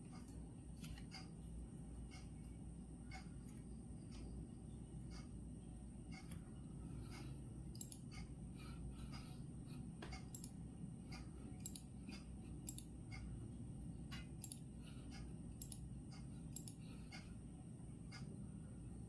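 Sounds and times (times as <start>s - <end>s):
low background rumble and hiss: 0.0s - 19.0s
clock ticking: 1.0s - 1.4s, 2.0s - 17.4s, 18.0s - 18.4s
faint clicks: 7.1s - 8.3s, 10.0s - 13.3s, 14.1s - 17.3s.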